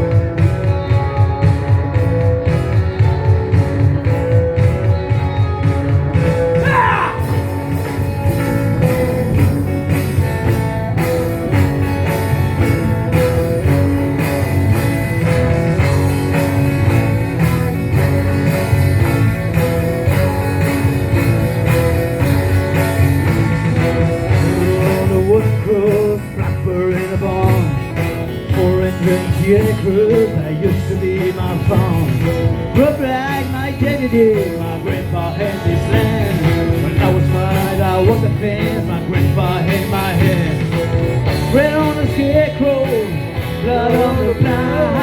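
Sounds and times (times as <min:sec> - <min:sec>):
country-rock band playing: 0:00.0 - 0:45.0
person singing: 0:24.3 - 0:45.0.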